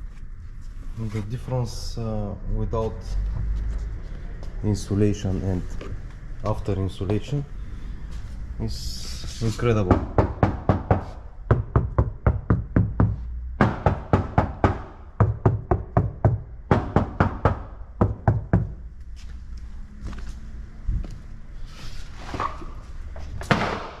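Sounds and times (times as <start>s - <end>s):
knuckles knocking on sheet metal: 9.9s - 18.8s.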